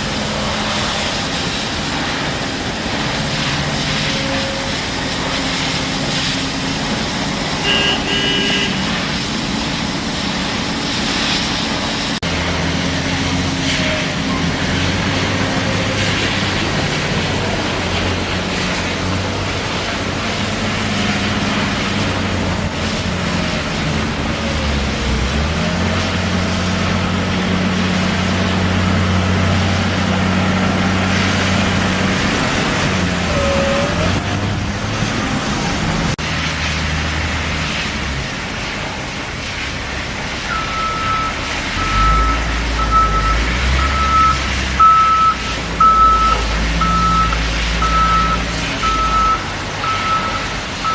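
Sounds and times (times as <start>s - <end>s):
excavator diesel engine: 0.0s - 50.9s
reversing alarm beeping: 40.5s - 50.9s.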